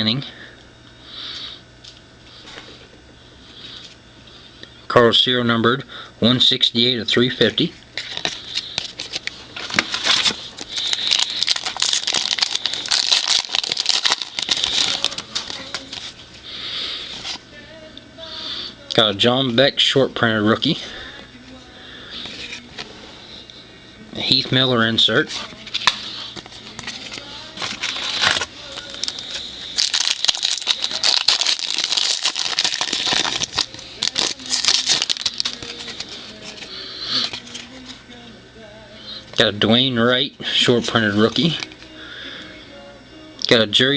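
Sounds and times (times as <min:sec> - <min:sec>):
foil wrapper tearing and crinkling: 0:08.0 - 0:16.1, 0:25.6 - 0:37.9
cards rustling and clicking: 0:08.0 - 0:16.2, 0:25.2 - 0:38.0.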